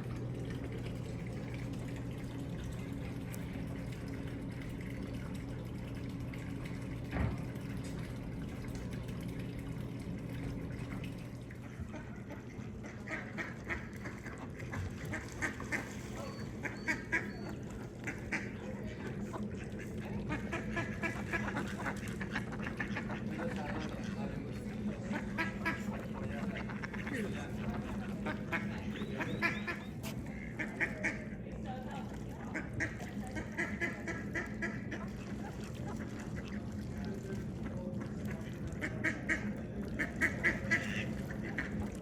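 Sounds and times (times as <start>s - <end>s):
steady low hum: 0.0s - 42.0s
ducks quacking: 11.6s - 31.4s, 32.5s - 37.0s, 37.6s - 42.0s.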